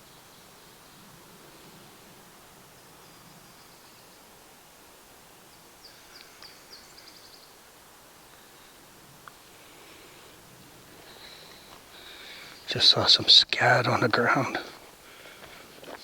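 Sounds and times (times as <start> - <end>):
faint outdoor hiss: 0.0 - 16.0
songbird singing with trill: 2.8 - 4.4, 5.5 - 8.8, 11.1 - 13.2.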